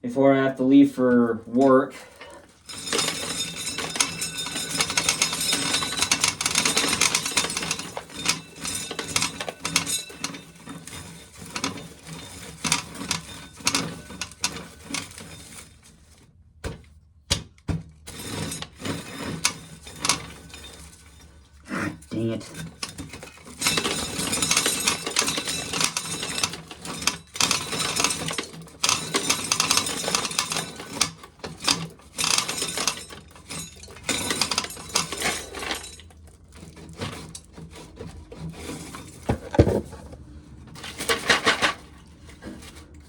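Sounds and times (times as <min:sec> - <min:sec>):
corn sheller rattling: 0:02.4 - 0:15.7, 0:22.2 - 0:40.2.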